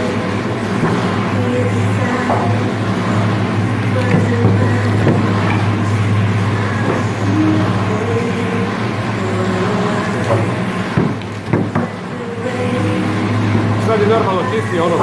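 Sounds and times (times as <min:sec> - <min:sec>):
low machine hum: 0:00.0 - 0:15.0
sharp knocks: 0:11.0 - 0:11.9.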